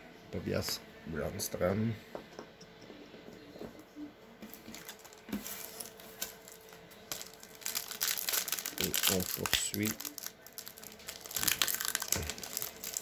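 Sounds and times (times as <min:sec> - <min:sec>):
foil pack crinkling: 0:04.5 - 0:13.0
plastic card sleeves rustling: 0:04.6 - 0:13.0.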